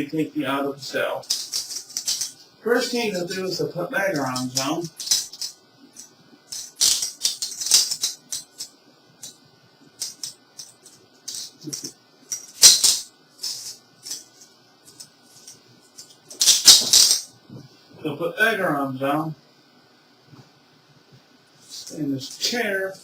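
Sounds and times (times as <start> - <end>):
metal cuffs clicking: 4.2 - 8.8.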